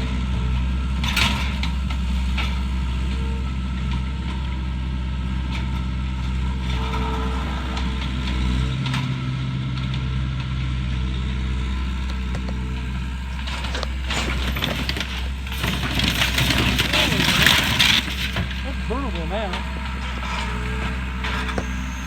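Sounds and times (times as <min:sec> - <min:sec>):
heavy machine engine running: 0:00.0 - 0:22.0
wood breaking cracks: 0:13.2 - 0:18.7.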